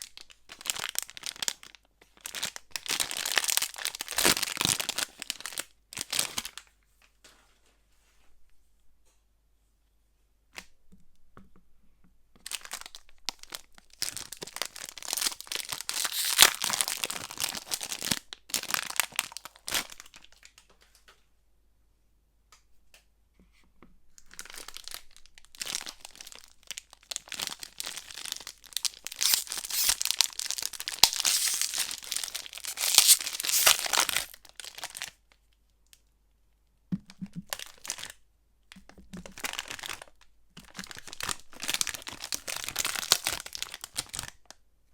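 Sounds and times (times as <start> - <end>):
wrappers tearing and crinkling: 14.6 - 18.0, 27.2 - 35.1.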